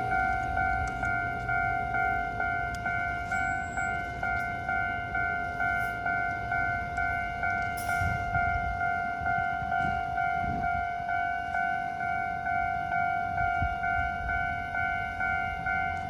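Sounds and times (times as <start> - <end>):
low rumble of passing traffic: 0.0 - 9.6
level crossing warning bell: 0.0 - 16.0.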